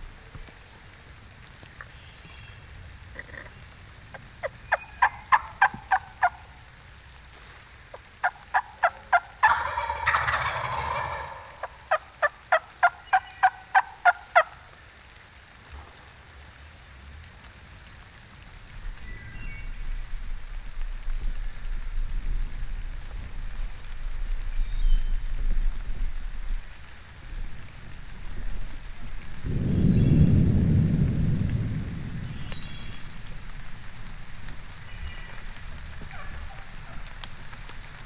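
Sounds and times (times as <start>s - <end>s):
turkey rattling gobble: 4.4s - 6.5s, 8.2s - 14.7s, 36.0s - 37.2s
turkey yelping: 4.4s - 6.5s, 8.2s - 14.6s, 36.1s - 37.0s.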